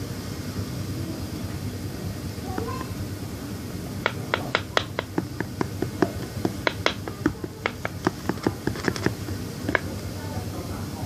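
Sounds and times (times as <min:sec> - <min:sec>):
spoon stirring slime clicks: 0:04.3 - 0:09.9.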